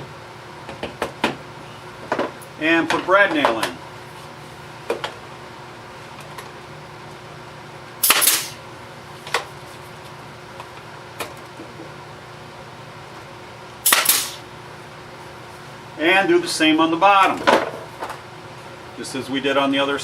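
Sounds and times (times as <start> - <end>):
nail gun firing: 8.0 - 8.6, 13.8 - 14.4.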